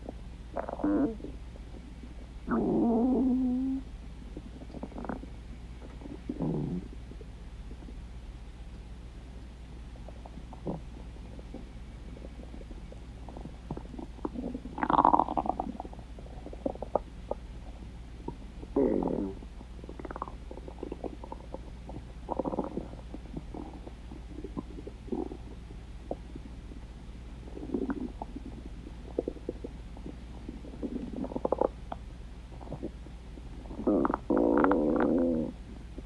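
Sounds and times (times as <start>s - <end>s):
stomach growling: 0.0s - 7.0s, 10.0s - 26.8s, 27.4s - 36.0s.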